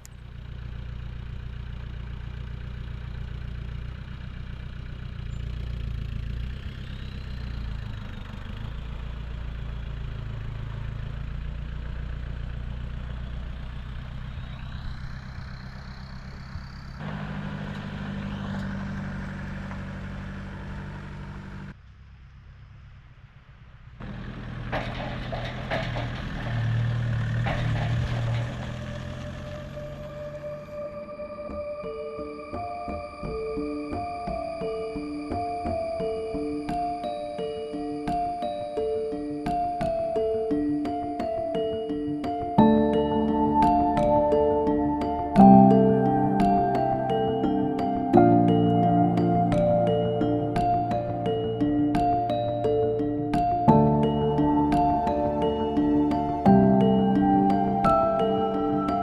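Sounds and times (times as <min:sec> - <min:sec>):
vehicle engine idling: 0:00.0 - 0:37.8.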